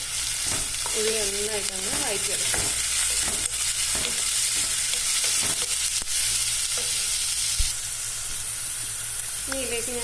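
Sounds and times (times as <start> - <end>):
onions sizzling in oil: 0.0 - 10.0
spoon knocking against pan: 1.8 - 5.9.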